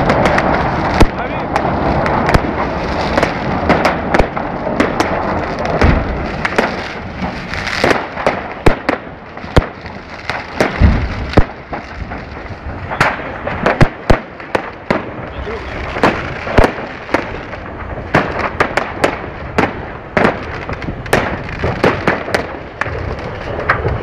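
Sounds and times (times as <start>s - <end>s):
fireworks bangs and pops: 0.0s - 24.0s
hissing crackle: 0.0s - 24.0s.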